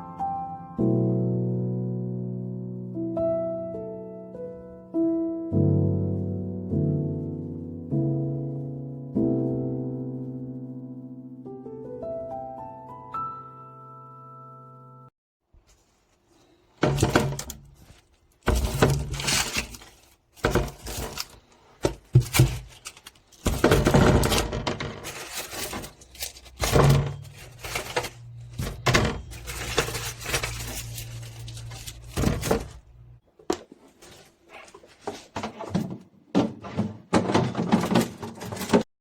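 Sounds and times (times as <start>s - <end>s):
household items clattering: 16.7s - 38.9s.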